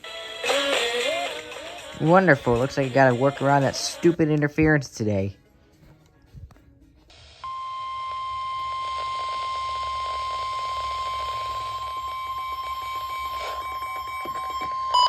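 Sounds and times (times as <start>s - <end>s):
steady high alarm tone: 7.1s - 15.0s.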